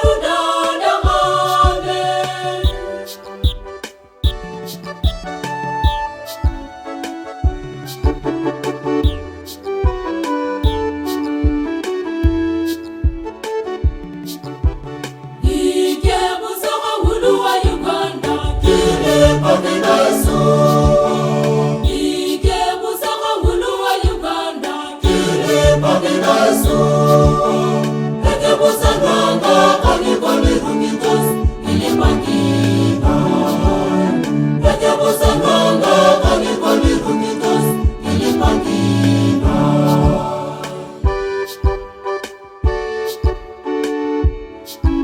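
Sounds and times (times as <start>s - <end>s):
choir singing a hymn: 0.0s - 4.4s, 15.4s - 41.6s
steady low beat: 2.6s - 6.6s, 9.0s - 9.8s, 10.6s - 11.1s, 17.1s - 22.7s, 25.0s - 42.1s.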